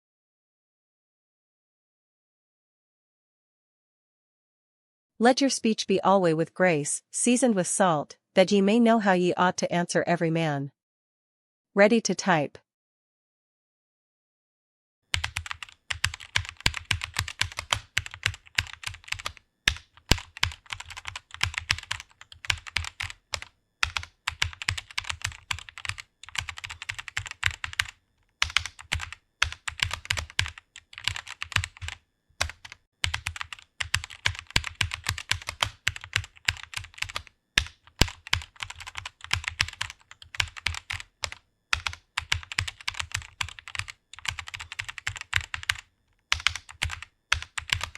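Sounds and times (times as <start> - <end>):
computer keyboard typing: 15.1 - 47.9.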